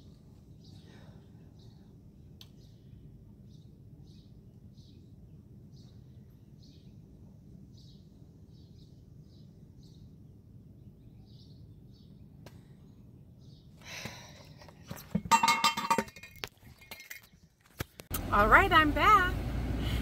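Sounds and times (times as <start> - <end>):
bird chirping: 0.0 - 13.7
low steady rumble: 18.1 - 20.0.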